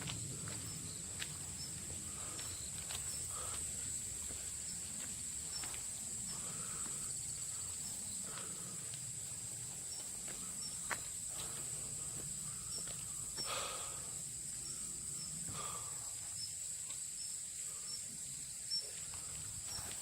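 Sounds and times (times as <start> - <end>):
insects buzzing: 0.0 - 20.0.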